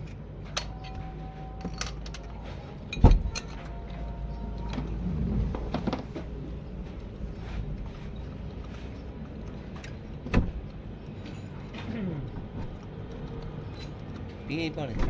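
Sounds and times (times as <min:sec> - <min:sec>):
metal tools clinking: 0:00.0 - 0:05.0, 0:11.0 - 0:12.0, 0:13.6 - 0:14.9
steady low rumble: 0:00.0 - 0:15.0.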